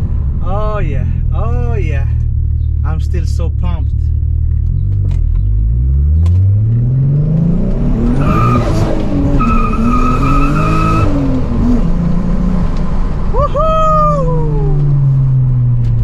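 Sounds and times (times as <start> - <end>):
engine accelerating hard: 1.0 - 16.0
tires squealing: 8.0 - 11.8.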